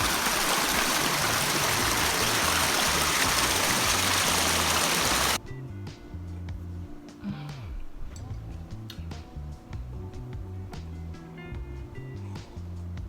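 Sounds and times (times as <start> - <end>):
river water rushing: 0.0 - 5.4
background music with bass: 1.0 - 13.0.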